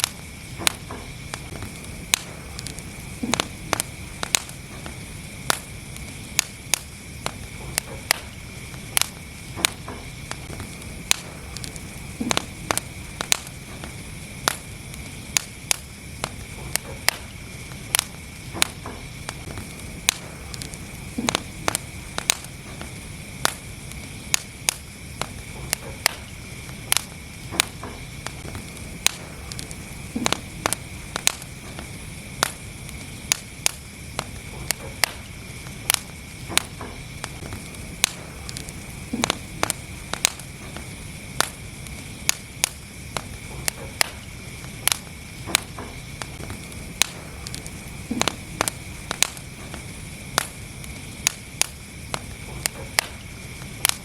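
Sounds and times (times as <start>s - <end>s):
low rush of flames: 0.0s - 54.0s
wood fire crackling: 0.0s - 54.0s.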